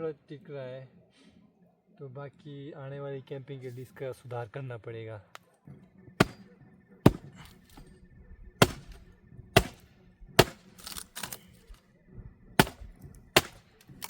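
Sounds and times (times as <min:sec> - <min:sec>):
sharp knocks: 0:06.2 - 0:06.4, 0:07.1 - 0:07.4, 0:08.6 - 0:09.0.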